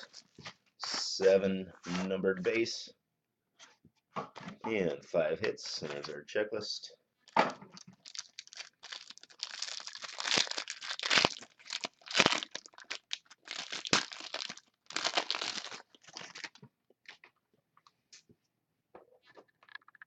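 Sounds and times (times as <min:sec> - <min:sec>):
wrapper crinkling and tearing: 0:07.8 - 0:17.2.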